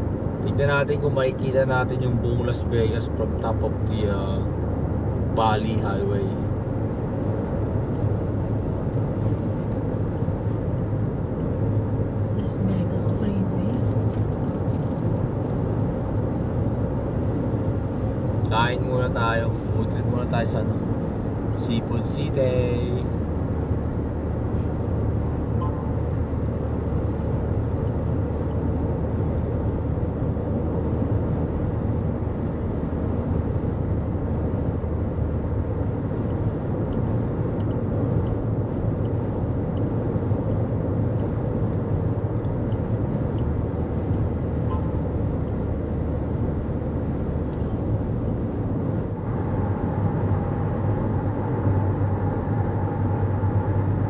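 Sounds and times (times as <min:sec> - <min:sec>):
car road noise at highway speed: 0:00.0 - 0:54.0
steady higher hum: 0:15.9 - 0:28.7, 0:38.5 - 0:54.0.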